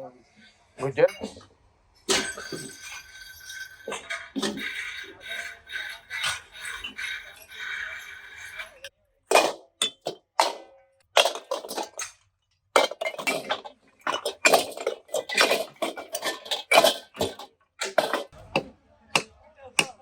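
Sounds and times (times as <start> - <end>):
metal parts clanking: 2.0 - 12.2, 12.8 - 18.4.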